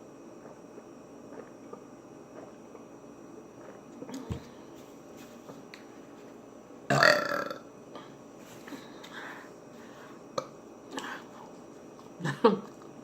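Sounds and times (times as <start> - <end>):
loud burp: 6.9 - 7.6.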